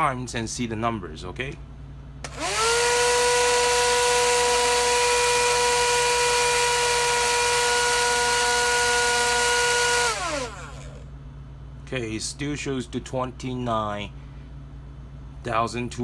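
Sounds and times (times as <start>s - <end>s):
electric motor high whine: 2.3s - 11.0s.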